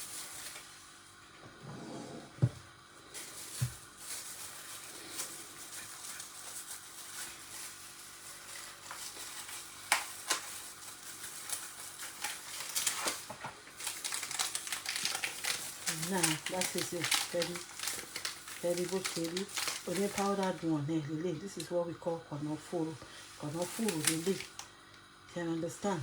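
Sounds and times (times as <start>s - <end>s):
pot simmering hiss: 0.0s - 26.0s.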